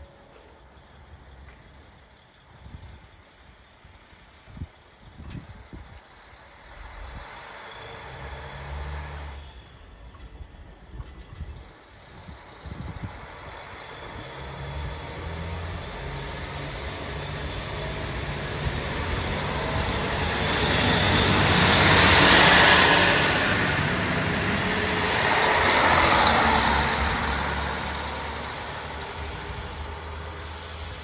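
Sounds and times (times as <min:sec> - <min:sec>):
train wheels rattling on rail: 0:07.2 - 0:31.0
diesel engine humming: 0:13.0 - 0:31.0
thin high whine: 0:15.0 - 0:30.0.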